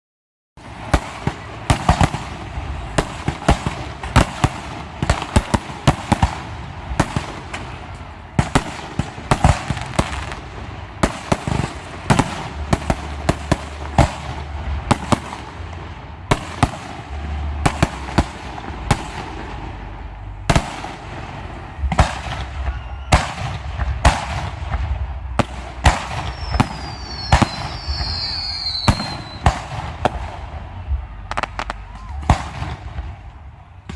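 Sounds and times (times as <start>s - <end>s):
low rumble: 10.0s - 33.9s
high whistles: 22.3s - 23.6s, 26.0s - 29.6s.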